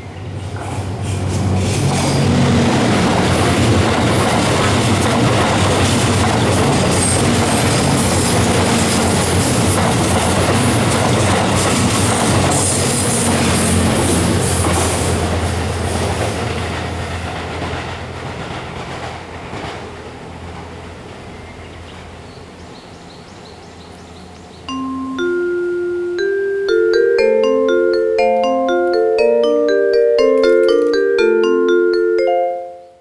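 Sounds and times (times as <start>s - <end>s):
low train engine hum: 0.0s - 32.2s
wheel-on-rail clatter: 0.5s - 20.7s.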